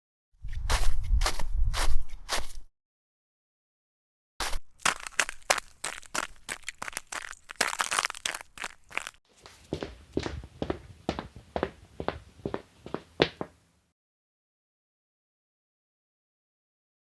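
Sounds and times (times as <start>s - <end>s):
sharp crackles and crunches: 4.4s - 10.4s.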